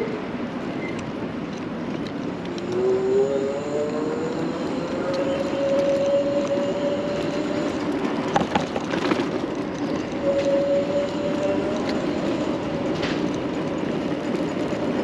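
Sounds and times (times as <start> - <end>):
tyre and wind noise: 0.0 - 15.0
electric bike motor whining: 2.6 - 8.3, 8.9 - 12.7
clicks and rattles: 8.2 - 10.2.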